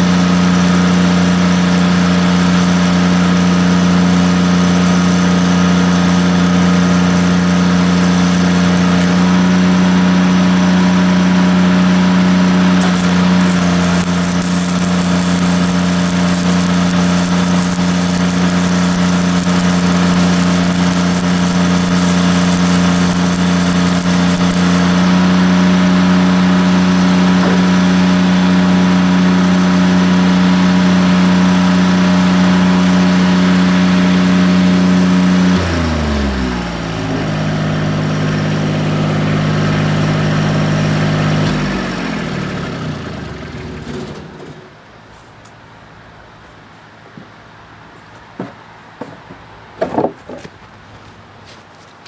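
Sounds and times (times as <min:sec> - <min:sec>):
arc welding hiss and crackle: 0:00.0 - 0:35.6
welder engine running: 0:00.0 - 0:44.7.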